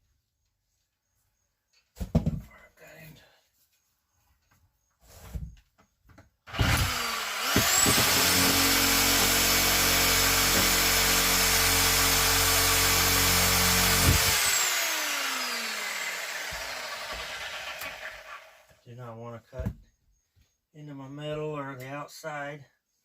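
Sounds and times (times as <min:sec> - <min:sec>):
circular saw whining: 0:06.5 - 0:18.8
saw cutting into floor: 0:06.5 - 0:18.8.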